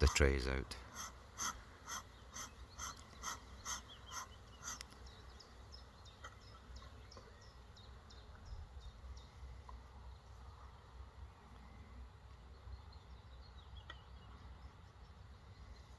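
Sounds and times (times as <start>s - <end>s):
small bird chirping: 1.8s - 9.4s.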